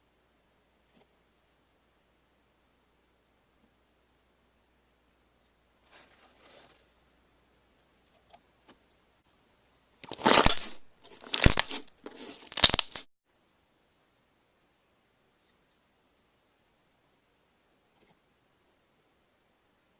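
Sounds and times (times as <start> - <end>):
loud slime squishes: 10.0 - 13.1
slime rustle: 10.0 - 13.1.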